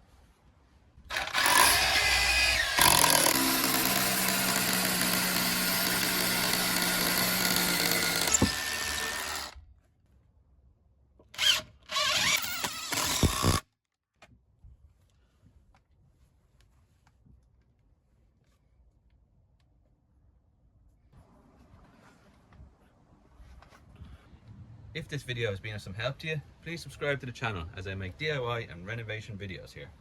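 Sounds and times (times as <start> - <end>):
hammer drill drilling: 1.1 - 9.6, 11.4 - 13.6
impact driver driving screw: 1.1 - 9.6, 11.4 - 13.6.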